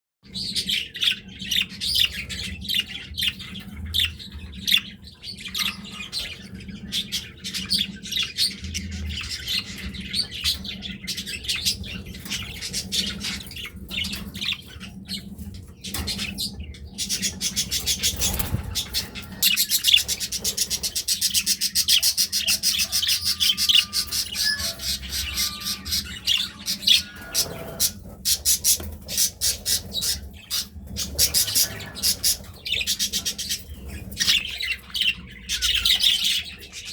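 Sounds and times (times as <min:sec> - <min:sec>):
budgerigars chattering: 0:15.9 - 0:36.9.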